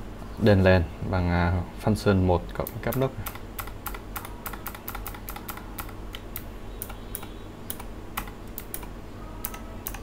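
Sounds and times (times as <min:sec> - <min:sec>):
clicky keyboard key presses: 0:02.6 - 0:10.0.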